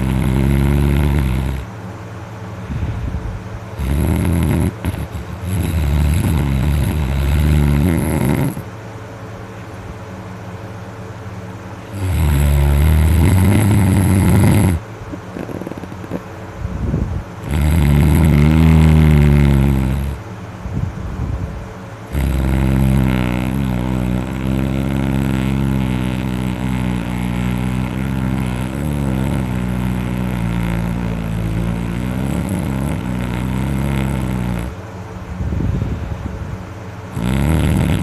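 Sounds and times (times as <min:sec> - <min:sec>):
man snoring loudly: 0:00.0 - 0:01.7, 0:03.8 - 0:08.7, 0:11.8 - 0:16.2, 0:17.4 - 0:20.2, 0:22.1 - 0:34.8, 0:37.1 - 0:38.0.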